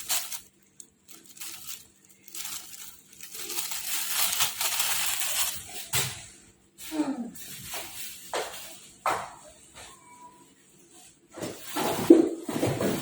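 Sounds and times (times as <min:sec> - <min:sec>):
crackling and rustling: 0:00.0 - 0:09.4.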